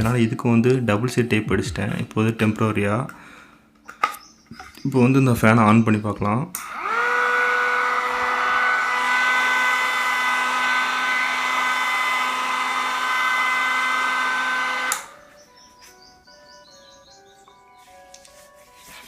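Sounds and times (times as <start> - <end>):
faint music: 0.0 - 6.6, 15.0 - 19.0
small motor whining: 6.6 - 15.2.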